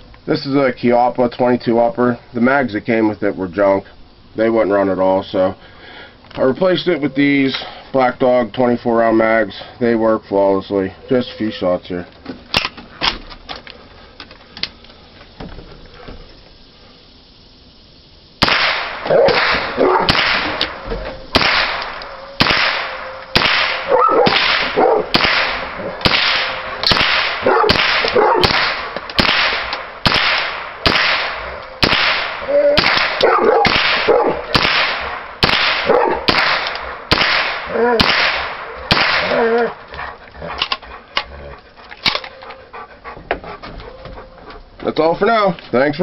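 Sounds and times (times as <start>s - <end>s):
rifle firing single shots: 18.4s - 39.4s.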